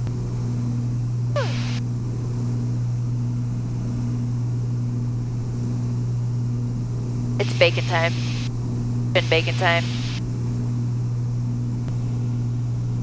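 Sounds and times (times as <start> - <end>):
propeller plane engines droning: 7.4 - 8.5, 9.2 - 10.2.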